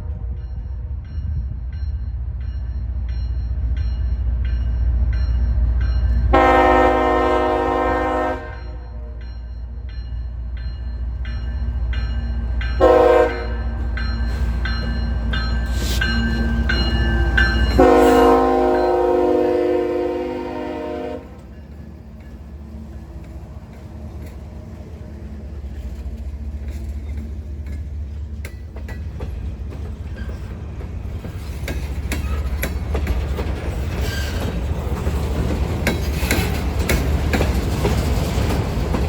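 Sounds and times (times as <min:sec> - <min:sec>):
train rumbling: 0:00.0 - 0:39.0
locomotive air horn blasts: 0:06.3 - 0:09.0, 0:12.8 - 0:13.7, 0:17.8 - 0:21.5.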